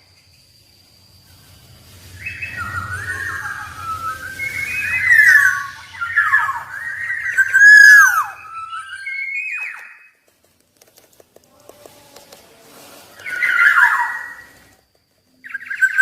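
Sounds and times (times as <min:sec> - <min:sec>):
oriole whistled song: 0:00.1 - 0:10.2, 0:13.1 - 0:16.0.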